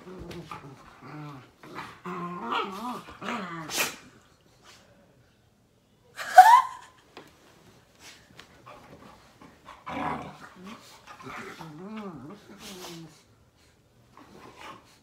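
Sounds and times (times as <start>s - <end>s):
dogs growling: 0.0s - 4.1s, 9.6s - 13.2s.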